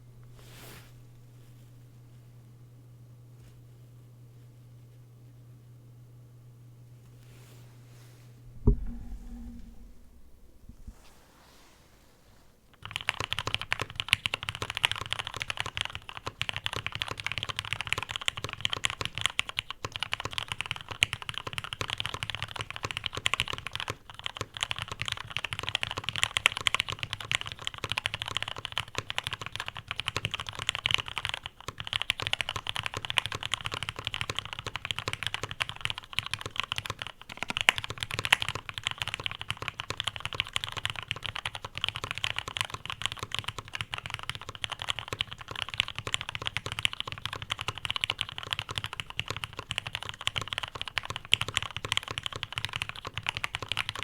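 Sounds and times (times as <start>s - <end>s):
fast mechanical keyboard typing: 12.8s - 54.0s.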